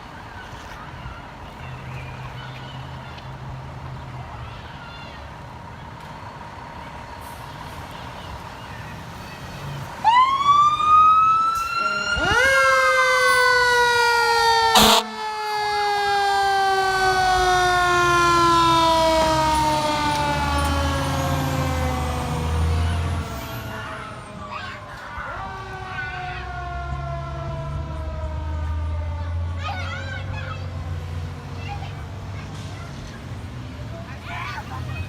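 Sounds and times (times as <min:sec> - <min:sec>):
fire engine siren winding: 0:10.0 - 0:24.3.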